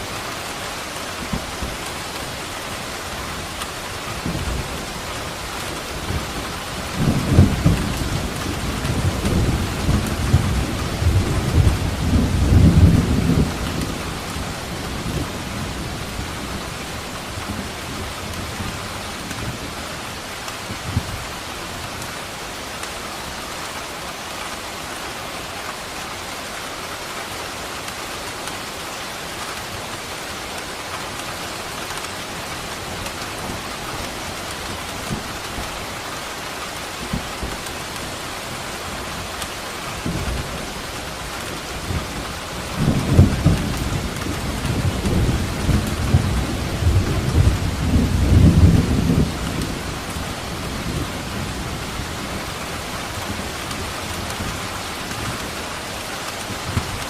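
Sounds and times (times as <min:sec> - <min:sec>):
steady rain: 0:00.0 - 0:57.0
thunder rumbling: 0:05.8 - 0:19.6, 0:40.0 - 0:57.0.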